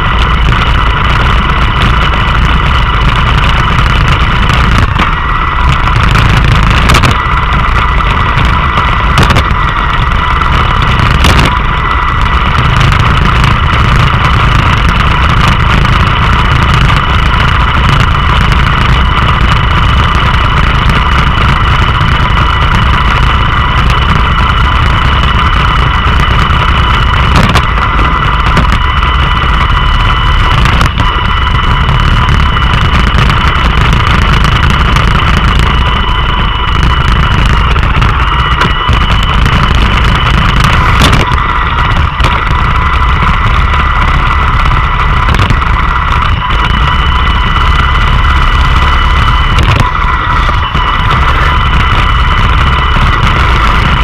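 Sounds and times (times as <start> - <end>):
robot vacuum motor whine: 0.0 - 54.0.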